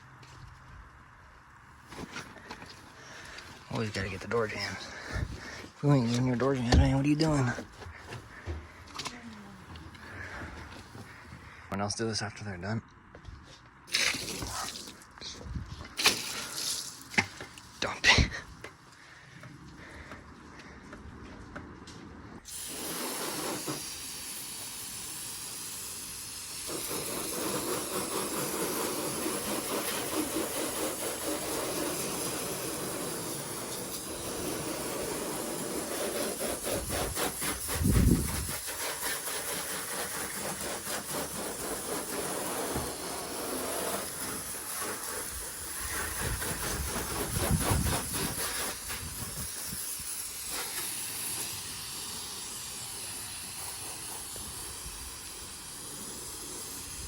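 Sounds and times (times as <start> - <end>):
hose spraying water: 13.9 - 15.1, 15.8 - 18.4, 22.4 - 57.0.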